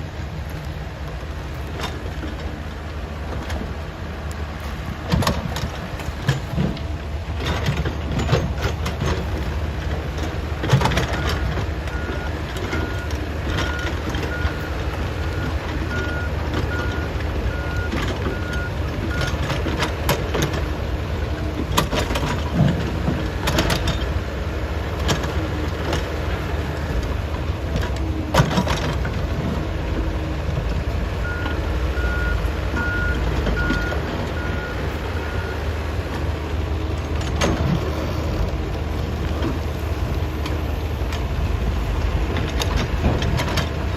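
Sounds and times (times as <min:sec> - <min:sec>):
diesel engines running under load: 0:00.0 - 0:43.9
metal knocks and clanks: 0:05.0 - 0:14.4
reversing alarm beeping: 0:11.1 - 0:19.4, 0:31.2 - 0:35.6.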